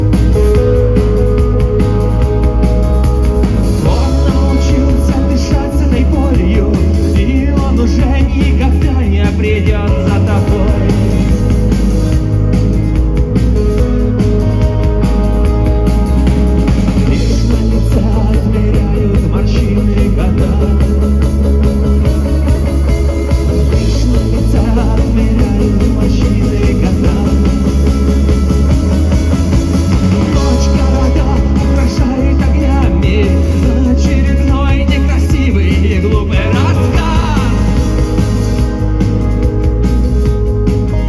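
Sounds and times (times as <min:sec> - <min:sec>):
rock band playing live: 0:00.0 - 0:41.0
person singing: 0:00.1 - 0:11.8, 0:17.0 - 0:22.9, 0:23.5 - 0:28.8, 0:30.1 - 0:38.9.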